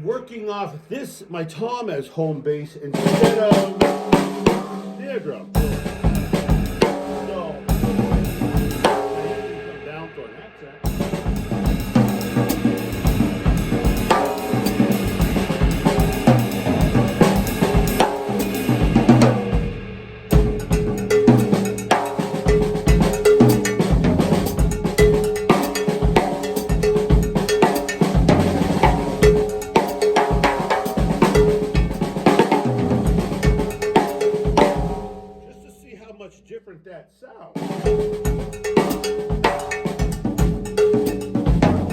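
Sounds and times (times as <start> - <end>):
drum kit groove: 2.8 - 36.4, 37.5 - 41.9
ringing pitched stroke: 20.3 - 32.2.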